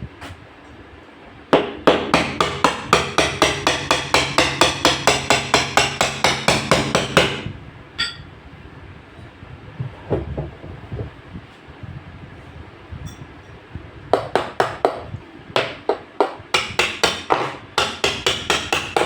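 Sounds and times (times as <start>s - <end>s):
hammer striking fast: 1.6s - 8.2s, 15.6s - 19.0s
ringing metallic ping: 8.0s - 8.3s.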